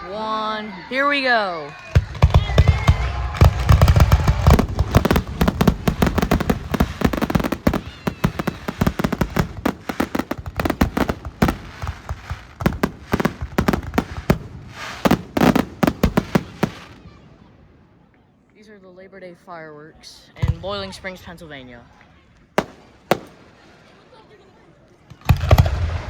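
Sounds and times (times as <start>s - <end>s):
fireworks bangs and crackling: 1.7s - 17.5s, 22.5s - 24.0s, 25.2s - 26.0s.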